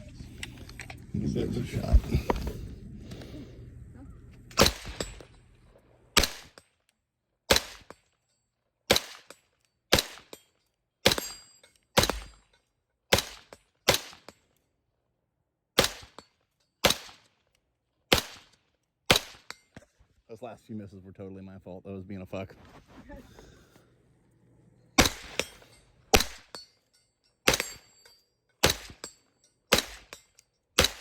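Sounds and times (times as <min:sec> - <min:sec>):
rifle shots: 0:04.6 - 0:05.3, 0:06.2 - 0:06.6, 0:07.5 - 0:07.9, 0:08.9 - 0:09.3, 0:09.9 - 0:10.4, 0:12.0 - 0:12.4, 0:13.1 - 0:14.3, 0:15.8 - 0:16.2, 0:16.8 - 0:17.2, 0:18.1 - 0:18.5, 0:19.1 - 0:19.5, 0:25.0 - 0:26.6, 0:27.5 - 0:27.9, 0:28.6 - 0:29.1, 0:29.7 - 0:30.2, 0:30.8 - 0:31.0.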